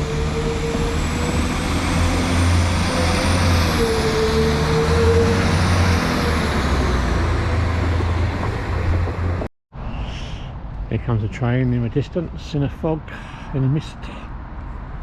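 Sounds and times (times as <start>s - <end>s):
train engine droning: 0.0s - 13.8s
engine whine: 0.0s - 15.0s.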